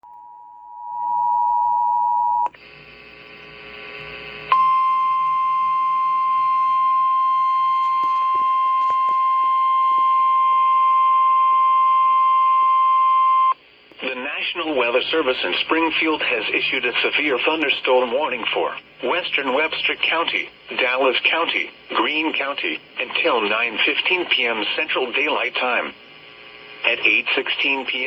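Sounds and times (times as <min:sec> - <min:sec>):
radio hiss: 0:02.5 - 0:04.5, 0:13.3 - 0:28.0.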